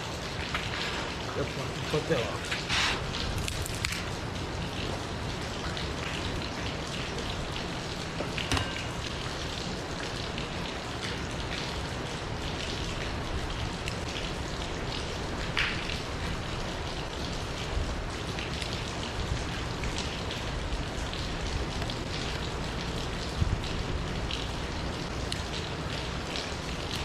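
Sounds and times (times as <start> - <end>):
campfire crackling and popping: 2.4 - 12.8.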